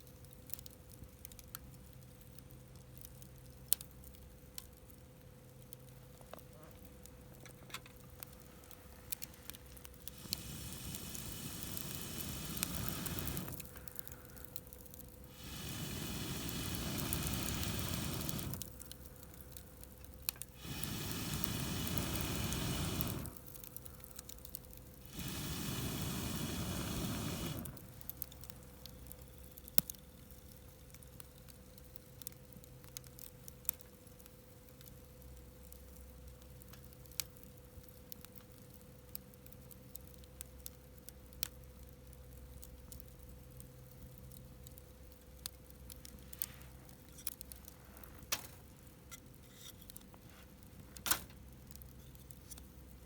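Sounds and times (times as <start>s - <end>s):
faint steady hum: 0.0s - 53.0s
fire crackling: 0.0s - 53.0s
blowing through a pipe into fire: 10.0s - 14.5s, 15.3s - 18.9s, 20.4s - 24.2s, 25.0s - 28.4s.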